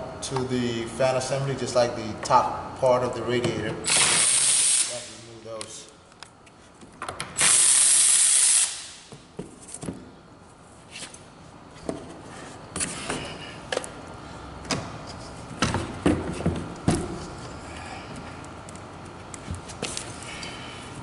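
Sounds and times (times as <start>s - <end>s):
loud hiss: 3.9s - 5.2s, 7.4s - 9.1s.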